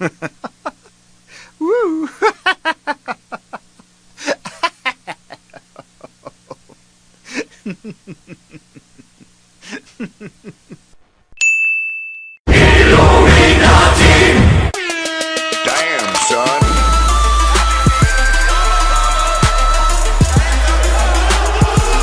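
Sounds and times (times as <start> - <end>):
person laughing in bursts: 0.0 - 1.0, 1.6 - 11.0.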